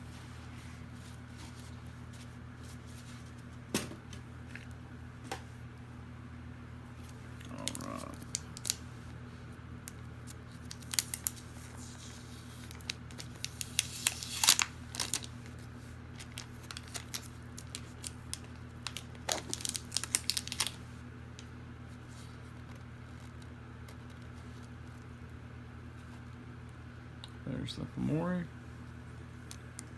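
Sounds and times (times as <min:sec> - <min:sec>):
low room hum: 0:00.0 - 0:29.9
packing material crinkling and tearing: 0:07.0 - 0:08.9, 0:09.9 - 0:21.5.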